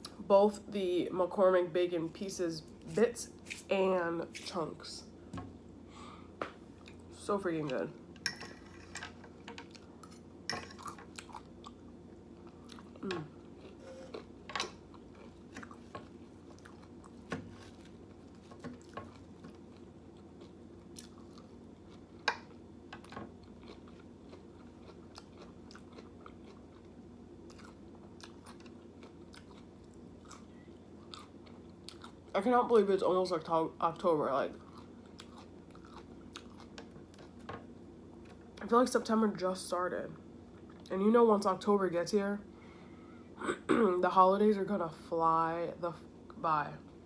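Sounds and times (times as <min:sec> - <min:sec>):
food crunching: 0:09.7 - 0:32.3, 0:34.5 - 0:37.5
person chewing food: 0:09.7 - 0:32.3, 0:34.6 - 0:37.5.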